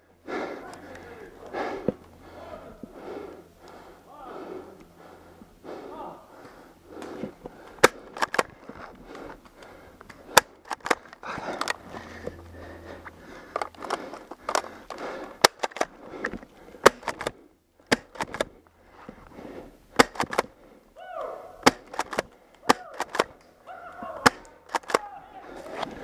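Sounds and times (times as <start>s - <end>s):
airsoft shotguns firing: 16.8s - 18.5s, 19.9s - 20.5s, 21.6s - 23.4s, 24.2s - 25.1s.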